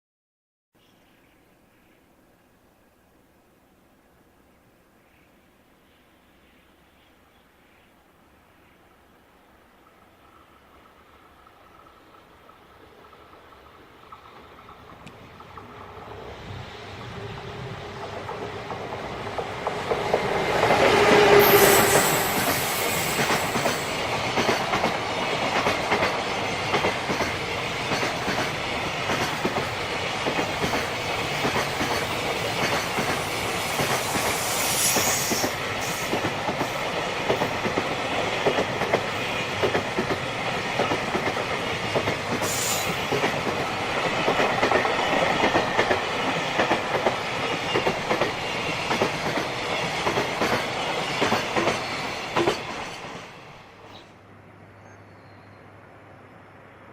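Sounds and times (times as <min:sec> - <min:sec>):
train locomotive passing: 0:09.4 - 0:56.9.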